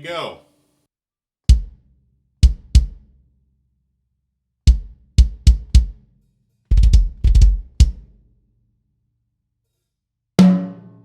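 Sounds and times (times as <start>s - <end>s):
drum hits: 1.5s - 1.8s, 10.4s - 10.9s.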